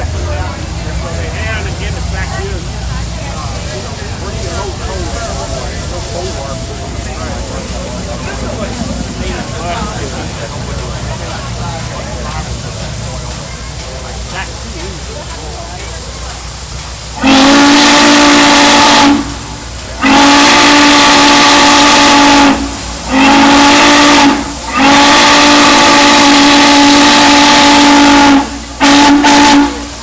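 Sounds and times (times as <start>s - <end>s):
hiss of steam: 0.0s - 30.0s
steam whistle blasts: 17.2s - 30.0s.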